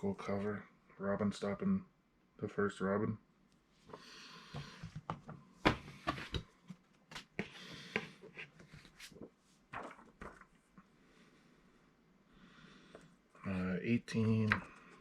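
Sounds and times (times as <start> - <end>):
comic books tapping and clicking: 4.6 - 10.7, 14.2 - 15.0
paper rustling: 8.0 - 10.8.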